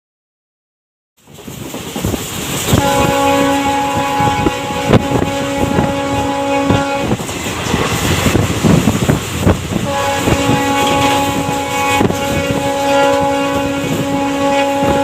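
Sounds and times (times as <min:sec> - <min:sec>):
train wheels clacking on rail joints: 0:01.2 - 0:15.0
locomotive horn blast: 0:02.7 - 0:07.2, 0:09.7 - 0:15.0.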